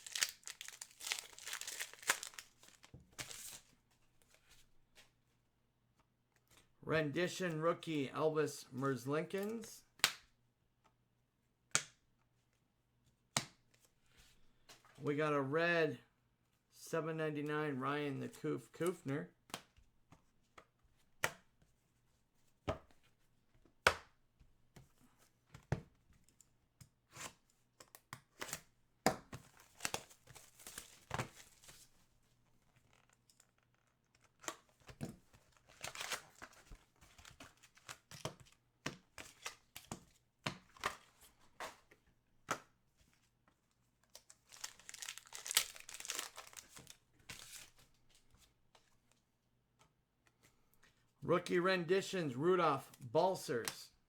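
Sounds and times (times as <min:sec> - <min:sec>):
cards clicking: 0:00.0 - 0:03.6
card wrappers tearing and crinkling: 0:00.0 - 0:03.7, 0:35.6 - 0:36.6, 0:44.2 - 0:47.8.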